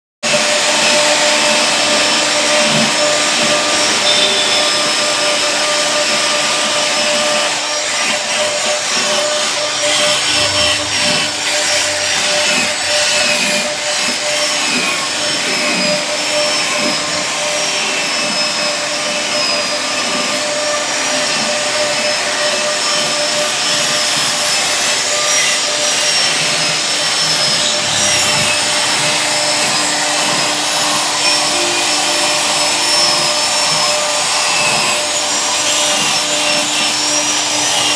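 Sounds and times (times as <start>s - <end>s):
router spindle whine: 0.3s - 37.9s
constant rushing noise: 9.2s - 15.5s.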